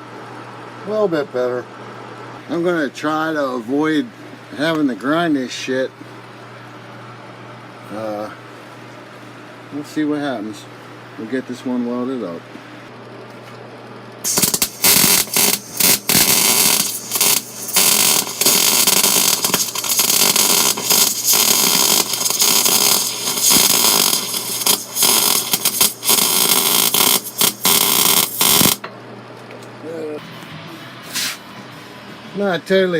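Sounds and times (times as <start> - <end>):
steady hum: 0.0 - 32.9
welding arc crackling: 14.2 - 28.9.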